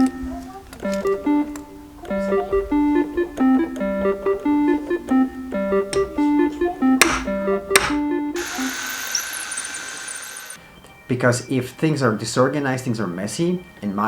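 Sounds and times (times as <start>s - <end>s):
keyboard playing short notes: 0.0s - 8.7s.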